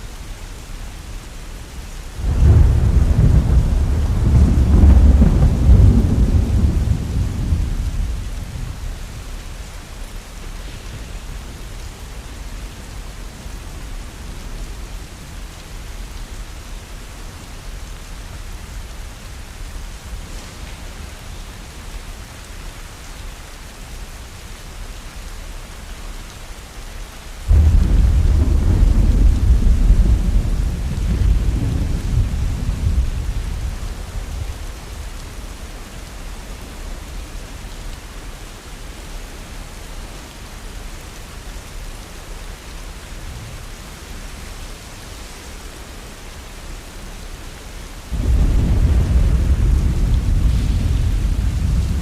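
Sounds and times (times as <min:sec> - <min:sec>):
steady rain: 0:00.0 - 0:52.0
thunder rolling: 0:02.2 - 0:08.6, 0:27.5 - 0:34.4, 0:48.1 - 0:52.0.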